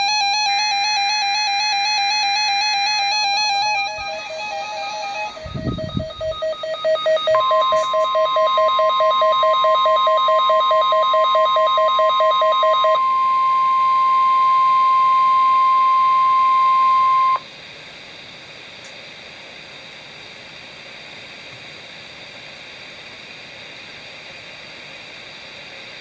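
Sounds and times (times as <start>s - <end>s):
rapidly pulsing beep: 0.0s - 17.4s
steady alert tone: 2.8s - 10.7s
radio hiss: 3.6s - 8.2s.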